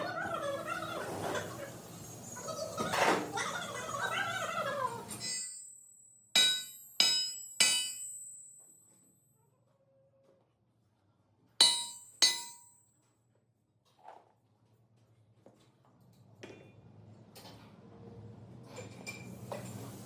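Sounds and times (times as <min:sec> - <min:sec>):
hammer striking metal: 0:05.2 - 0:08.7, 0:11.6 - 0:12.8.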